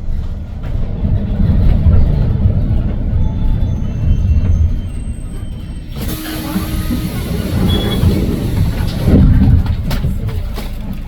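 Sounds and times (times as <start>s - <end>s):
bus engine and road rumble: 0.0s - 11.0s
loud hiss: 6.0s - 9.3s.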